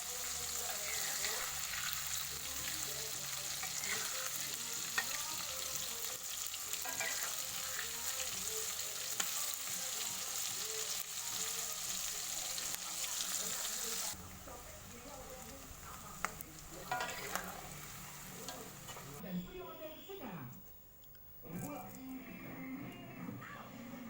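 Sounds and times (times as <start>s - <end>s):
mushrooms frying in hot oil: 0.0s - 19.2s.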